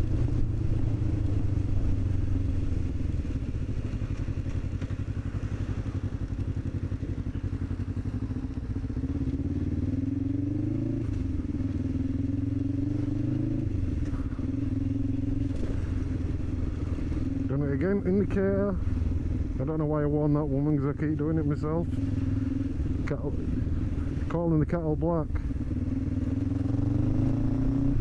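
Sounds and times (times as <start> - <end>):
motorcycle engine accelerating: 0.0 - 28.0.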